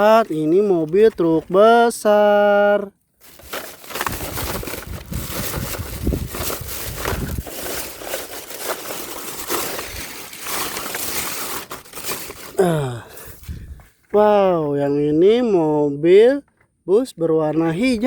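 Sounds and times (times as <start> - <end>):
plastic bag crinkling: 3.2 - 13.8.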